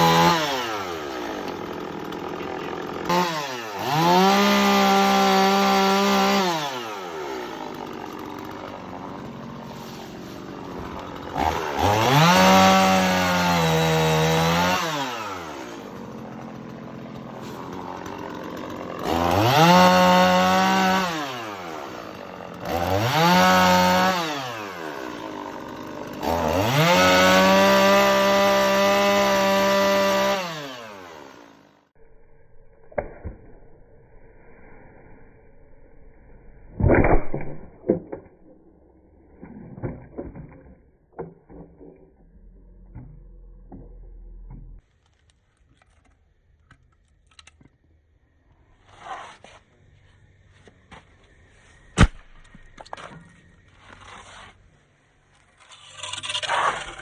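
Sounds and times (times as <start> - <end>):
chainsaw revving and idling: 0.0 - 31.9.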